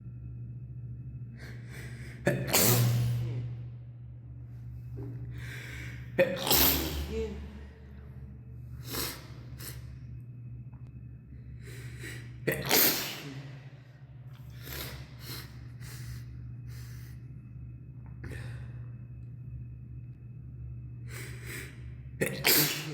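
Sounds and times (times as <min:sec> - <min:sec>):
steady low hum: 0:00.0 - 0:22.9
person sneezing: 0:02.1 - 0:03.5, 0:06.2 - 0:07.7, 0:12.1 - 0:13.6, 0:22.2 - 0:22.9
gasping in-breath: 0:05.3 - 0:07.7, 0:11.5 - 0:12.4.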